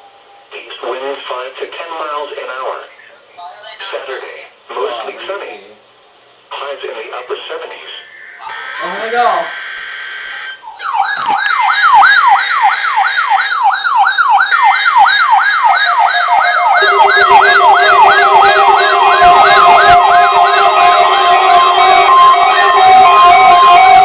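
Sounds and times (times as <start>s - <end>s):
steady alarm tones: 8.0s - 24.0s
siren wailing in fast yelp: 8.1s - 24.0s.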